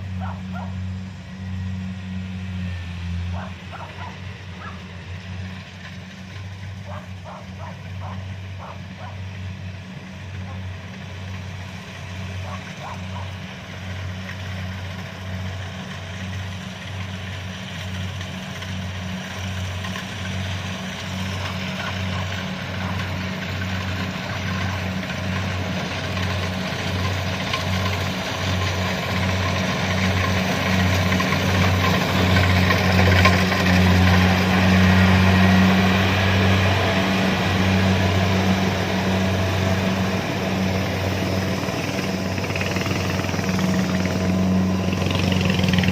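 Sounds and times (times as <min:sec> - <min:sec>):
diesel engine pulsing drone: 0:00.0 - 0:45.9.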